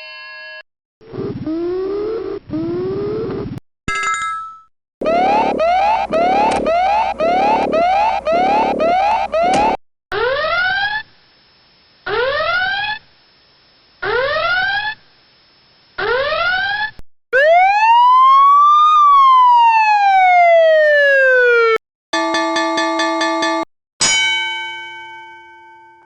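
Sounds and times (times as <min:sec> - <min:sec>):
electronic rising whoop tones: 0:05.0 - 0:09.8
siren wail: 0:05.0 - 0:11.0, 0:16.0 - 0:21.8.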